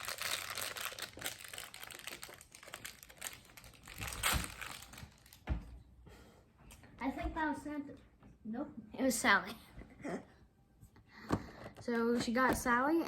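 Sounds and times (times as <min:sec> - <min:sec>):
plastic packaging crinkling: 0:00.0 - 0:05.4.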